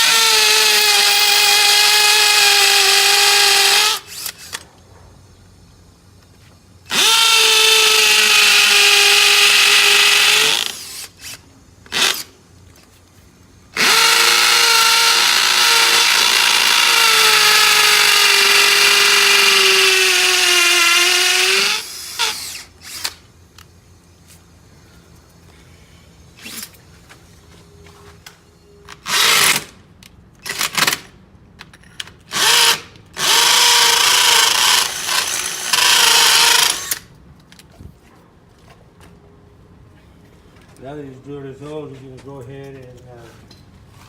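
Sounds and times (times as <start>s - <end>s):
power drill whine: 0.0s - 4.6s, 6.9s - 12.3s, 13.8s - 23.2s, 28.9s - 29.7s, 32.3s - 37.0s.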